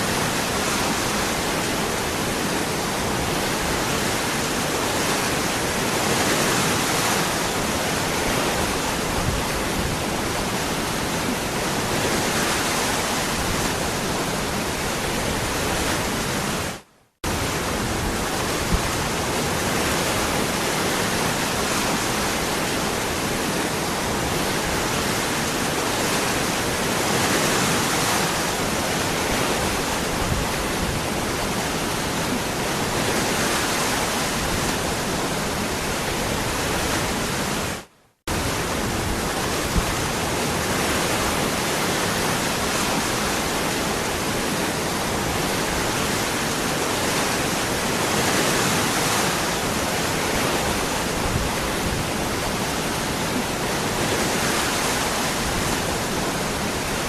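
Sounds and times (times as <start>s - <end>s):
waterfall roaring: 0.0s - 57.0s.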